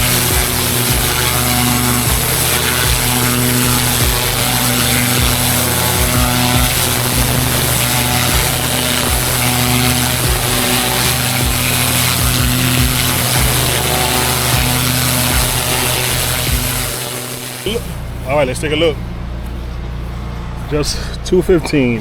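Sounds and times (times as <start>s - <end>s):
spraying water hiss: 0.0s - 18.2s
pressure washer engine running: 0.0s - 21.1s.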